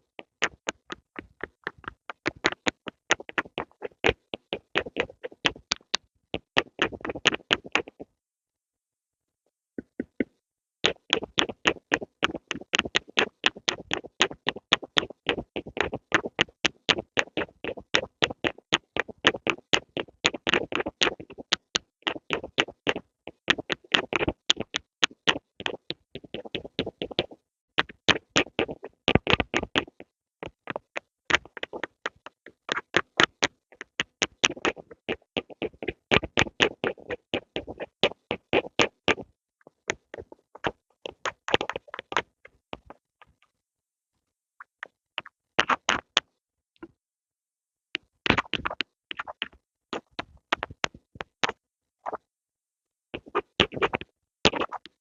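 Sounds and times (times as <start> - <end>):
pencil tapping: 0.1 - 8.0, 9.8 - 42.2.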